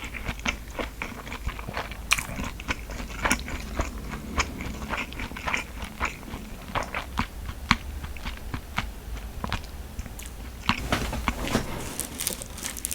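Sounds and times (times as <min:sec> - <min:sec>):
person chewing: 0:00.0 - 0:12.9
food snapping: 0:06.8 - 0:12.9.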